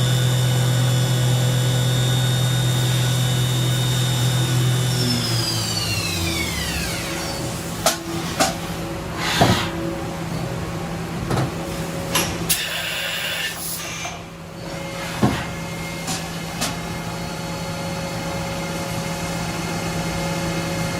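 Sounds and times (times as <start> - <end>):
machine hum: 0.0 - 12.6
hiss: 12.5 - 14.2.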